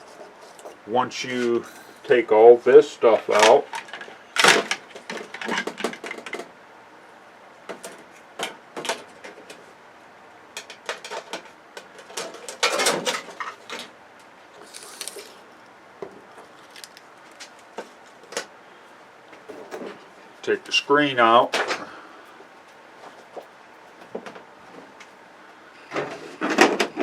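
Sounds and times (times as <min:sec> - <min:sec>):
clatter of tv parts handled: 0:03.3 - 0:06.5, 0:10.6 - 0:13.9.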